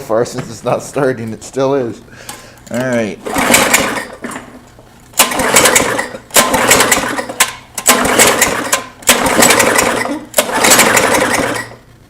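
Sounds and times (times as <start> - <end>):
lawn mower engine cranking: 2.8 - 11.8.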